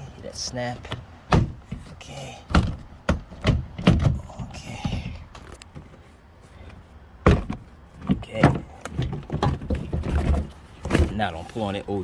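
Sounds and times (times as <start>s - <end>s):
loose panel rattling: 7.2s - 11.3s.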